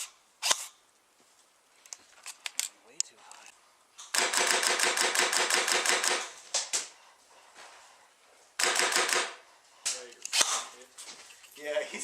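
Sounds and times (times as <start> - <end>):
airsoft gun firing bursts: 4.1 - 6.4, 8.6 - 9.4.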